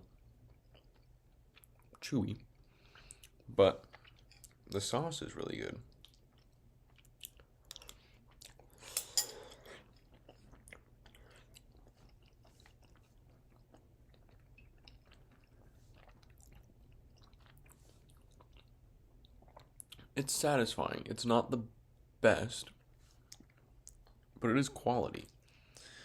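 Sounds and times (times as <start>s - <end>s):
person chewing food: 0.0s - 4.8s, 5.8s - 20.2s, 22.6s - 24.4s.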